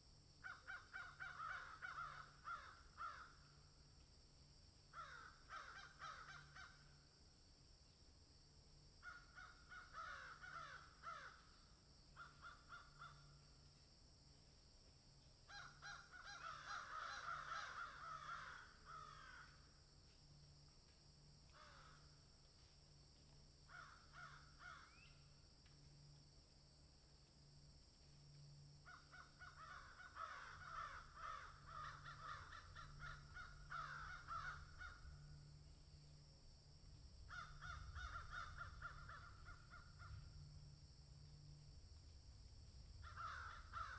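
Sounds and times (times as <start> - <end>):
crows and magpies calling harshly: 0.4 - 3.5, 4.9 - 6.9, 9.0 - 11.5, 12.2 - 13.4, 15.5 - 19.7, 21.5 - 22.0, 23.7 - 25.0, 28.8 - 35.4, 37.3 - 40.2, 43.0 - 43.9.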